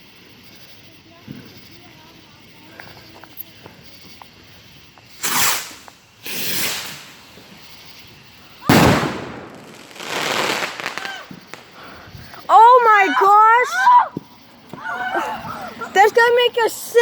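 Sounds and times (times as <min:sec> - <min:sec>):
hissing firework burst: 0:05.1 - 0:12.5
firework bangs: 0:05.1 - 0:13.0.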